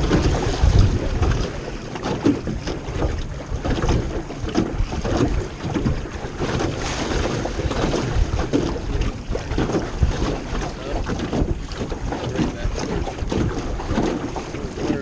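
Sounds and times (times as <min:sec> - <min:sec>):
water lapping against boat hull: 0:00.0 - 0:15.0
wind buffeting microphone: 0:00.0 - 0:15.0.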